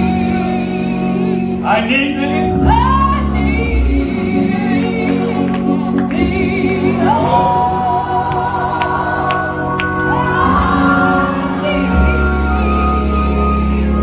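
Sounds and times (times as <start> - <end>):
gospel singing voices: 0.0 - 14.0
sustained instrumental accompaniment: 0.0 - 14.0.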